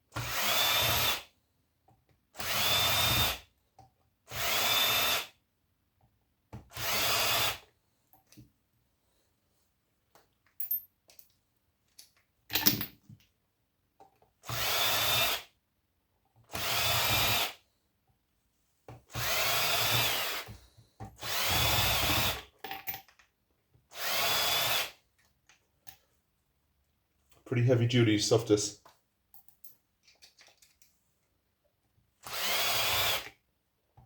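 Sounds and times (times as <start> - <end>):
power drill motor whine: 0.2 - 1.2, 2.4 - 3.4, 4.3 - 5.3, 6.7 - 7.6, 14.4 - 15.5, 16.5 - 17.6, 19.1 - 20.5, 21.2 - 22.4, 23.9 - 24.9, 32.2 - 33.3.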